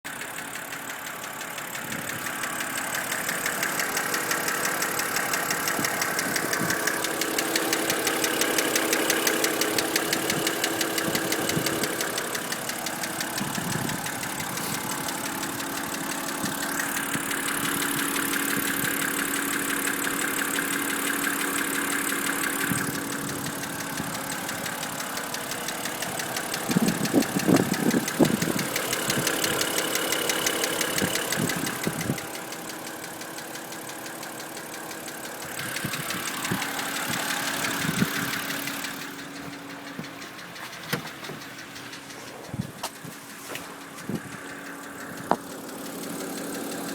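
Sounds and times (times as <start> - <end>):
car engine running: 0.1 - 46.9
fast regular engine knock: 0.1 - 46.9
irregular thumps: 35.3 - 46.8.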